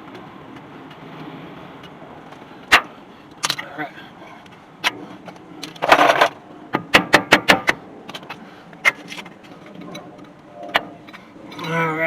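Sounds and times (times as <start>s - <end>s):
metallic rattle: 5.6s - 6.4s.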